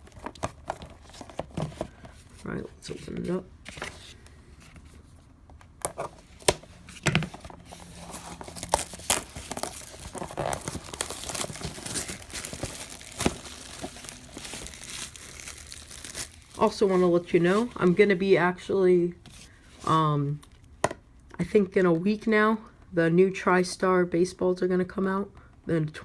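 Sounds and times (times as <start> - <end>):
packaging crinkling: 5.8 - 17.8
packaging tearing: 7.4 - 17.0.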